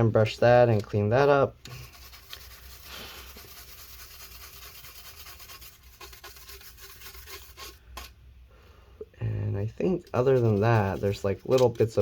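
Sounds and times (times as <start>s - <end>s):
small brush scrubbing circuit board: 1.6s - 8.2s, 9.7s - 12.0s.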